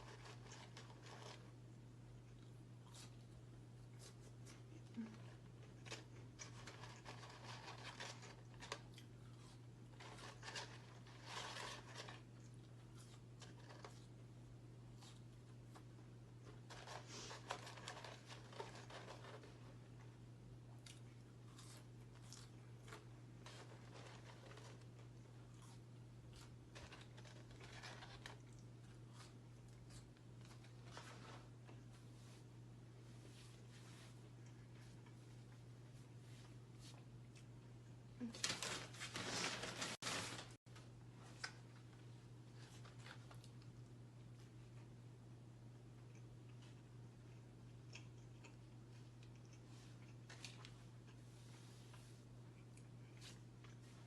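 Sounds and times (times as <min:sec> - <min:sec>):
paper packaging crinkling: 0:09.9 - 0:12.4, 0:16.6 - 0:19.6, 0:26.7 - 0:28.4, 0:38.2 - 0:40.6.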